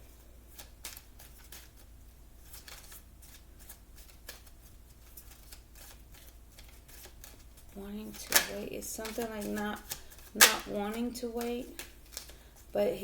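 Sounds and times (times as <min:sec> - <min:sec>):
cards being shuffled: 0:00.5 - 0:12.3.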